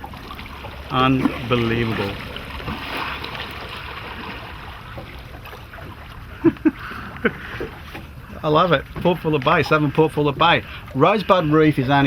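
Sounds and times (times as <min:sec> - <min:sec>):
water and wind hiss: 0:00.0 - 0:12.0.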